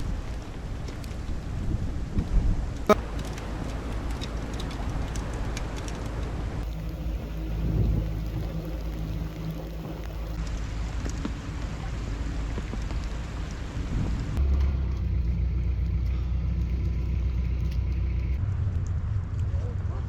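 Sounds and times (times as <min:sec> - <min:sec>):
hail ticking on boat: 0:02.8 - 0:13.7
diesel engine running: 0:02.9 - 0:18.4.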